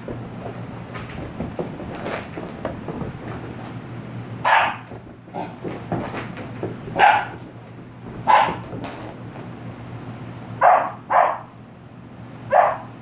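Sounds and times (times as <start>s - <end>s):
puppy barking: 4.4s - 5.5s, 6.9s - 7.4s, 8.2s - 8.8s, 10.6s - 11.6s, 12.5s - 13.0s.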